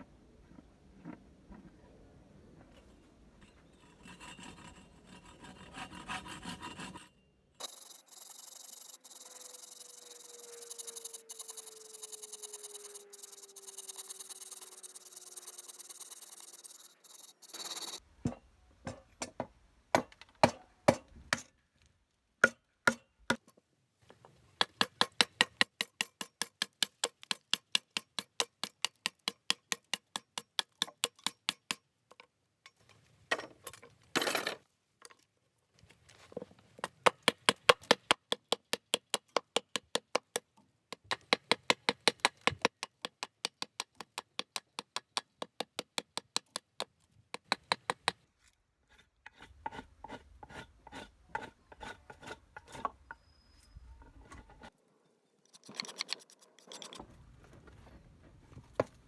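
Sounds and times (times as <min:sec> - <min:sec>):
mallet striking chisel: 0:22.4 - 0:23.4, 0:24.6 - 0:31.8, 0:36.8 - 0:48.2.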